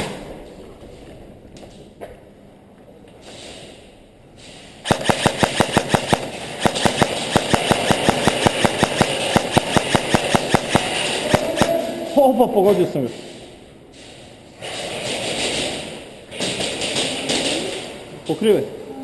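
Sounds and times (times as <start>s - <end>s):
airsoft gun full-auto burst: 4.8s - 11.7s.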